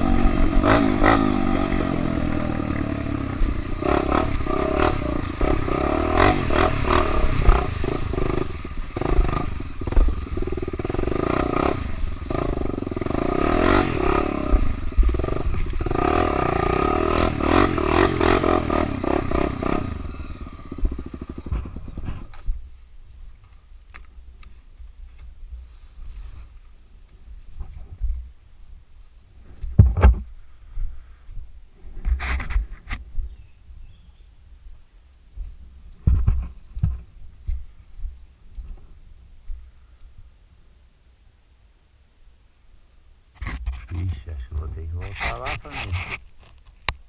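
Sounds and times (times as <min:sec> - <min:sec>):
motorcycle engine revving: 0:00.0 - 0:22.4.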